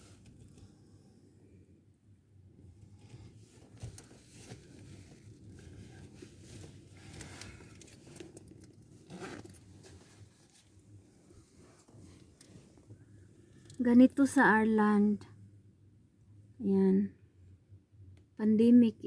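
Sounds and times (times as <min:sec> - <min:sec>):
low steady rumble: 0:00.0 - 0:19.0
rustling and crinkling: 0:02.8 - 0:13.8.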